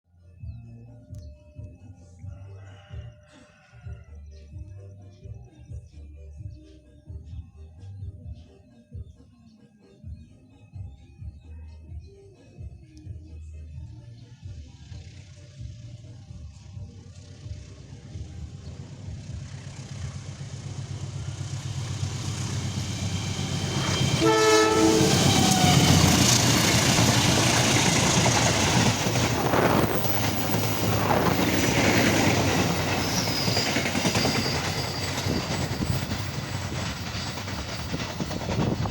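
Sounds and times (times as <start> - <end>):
train passing at speed: 16.6 - 38.9
wheels clickety-clack: 17.1 - 38.9
train horn blast: 23.5 - 26.6.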